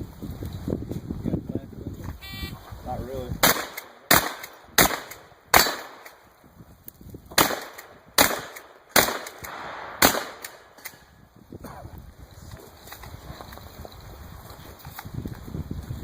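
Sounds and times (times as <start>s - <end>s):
shotgun shots: 3.4s - 6.2s, 7.3s - 11.0s.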